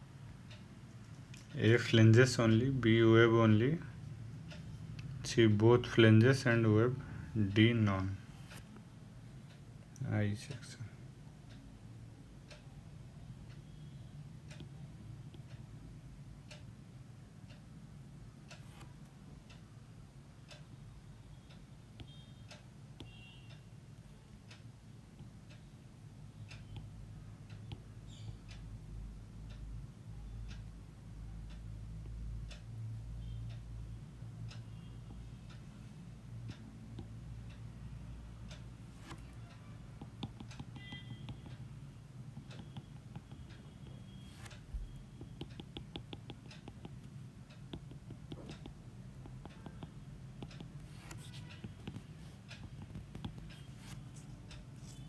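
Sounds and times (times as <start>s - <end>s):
pen ticking and tapping: 38.5s - 55.0s.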